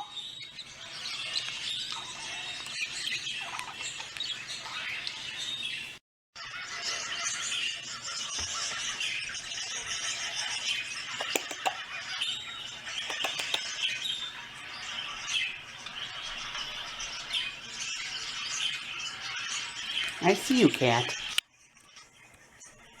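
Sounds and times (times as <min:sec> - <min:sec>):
birds chirping and squawking: 0:00.0 - 0:23.0
sharp clicks: 0:11.2 - 0:11.8, 0:13.1 - 0:13.8.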